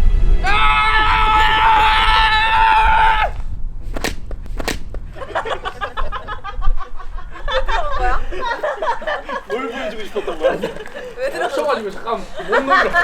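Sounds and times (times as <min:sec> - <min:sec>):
sharp cracks: 0:03.2 - 0:05.7
people chattering: 0:07.3 - 0:13.0.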